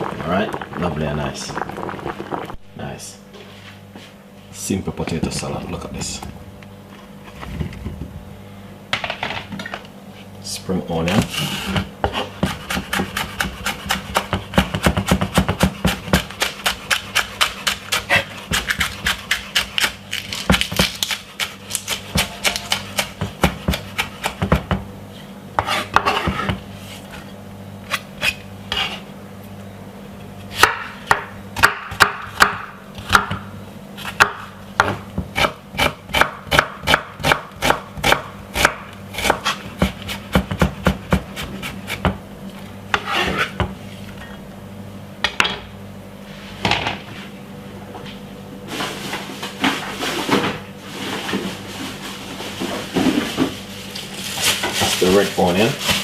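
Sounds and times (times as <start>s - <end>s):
knife chopping on cutting board: 11.2s - 24.8s, 25.6s - 26.6s, 30.5s - 42.2s.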